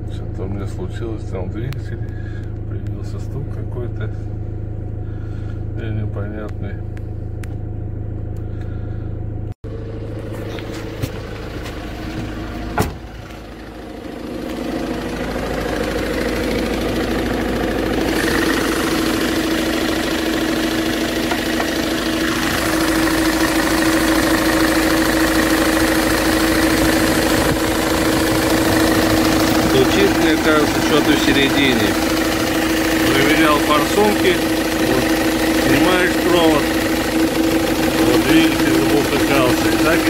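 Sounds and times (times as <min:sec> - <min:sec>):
engine running with a knock: 0:09.6 - 0:40.0.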